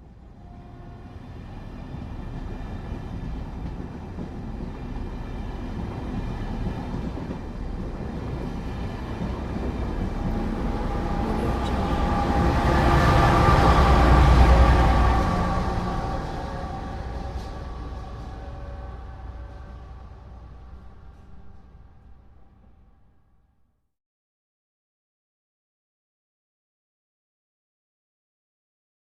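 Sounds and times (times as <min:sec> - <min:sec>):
train rumble: 0:00.0 - 0:23.1
thin high tones from train: 0:10.0 - 0:22.2.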